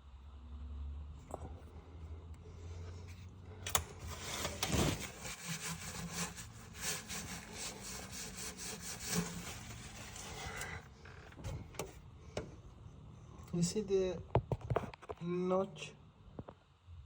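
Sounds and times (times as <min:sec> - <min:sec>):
rapid uneven scraping strokes: 0:04.1 - 0:10.8.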